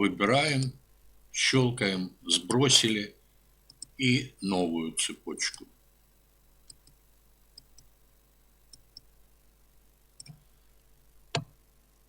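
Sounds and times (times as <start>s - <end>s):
computer mouse clicking: 3.6s - 4.0s, 6.6s - 7.0s, 7.6s - 7.9s, 8.7s - 9.1s, 10.2s - 10.4s, 11.3s - 11.6s.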